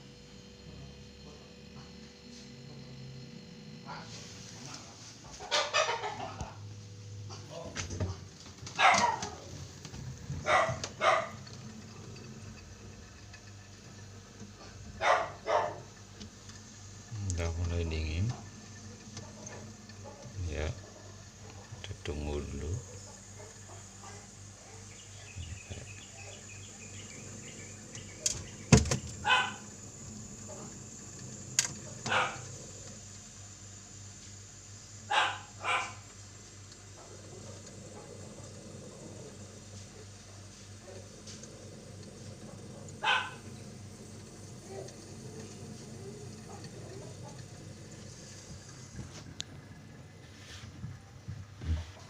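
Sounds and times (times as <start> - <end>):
low steady hum: 0.0 - 52.0
dog barking: 5.4 - 6.4, 8.7 - 9.6, 10.4 - 11.5, 15.0 - 15.9, 19.2 - 21.9, 22.8 - 25.0, 29.2 - 29.7, 31.8 - 32.6, 35.1 - 36.0, 42.7 - 43.6.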